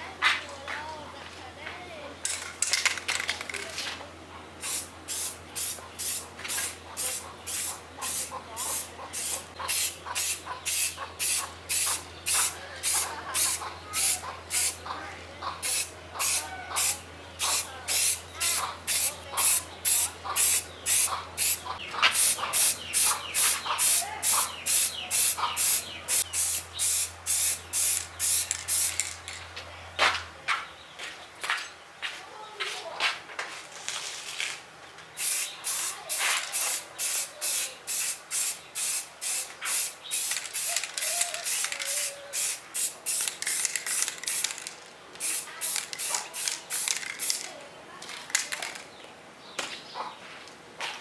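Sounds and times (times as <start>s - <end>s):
short spray bursts: 4.6s - 14.8s, 15.6s - 29.1s, 35.2s - 47.5s.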